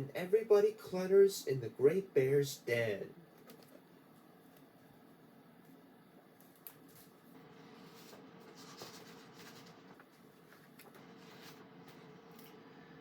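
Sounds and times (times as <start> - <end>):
faint steady hum: 0.0 - 13.0
soft rustles and clicks: 3.3 - 4.9, 5.6 - 7.2.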